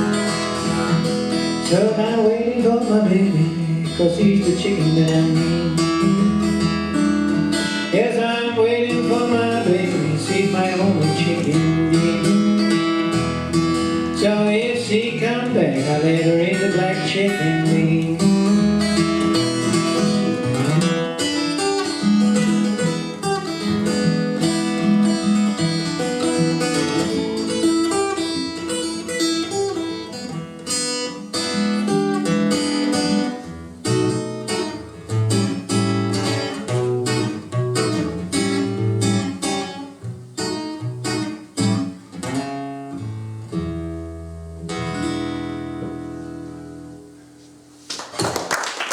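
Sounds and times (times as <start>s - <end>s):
acoustic guitar blues: 0.0s - 47.9s.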